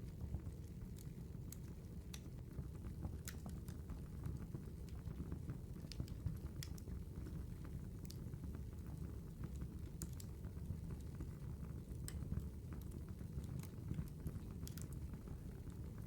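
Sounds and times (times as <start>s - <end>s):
campfire flames rumbling: 0.0s - 16.0s
wood crackling and popping: 0.0s - 16.0s.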